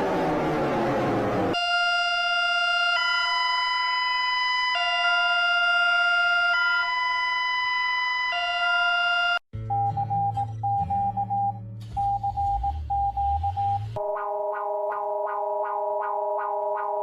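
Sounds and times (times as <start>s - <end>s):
two-tone warning siren: 0.0s - 9.4s.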